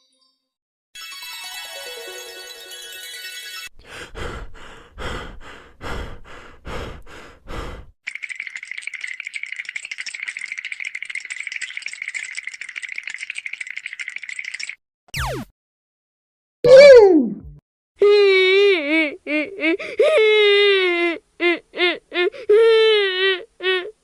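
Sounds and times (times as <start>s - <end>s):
fast steady rattle: 8.1s - 14.8s.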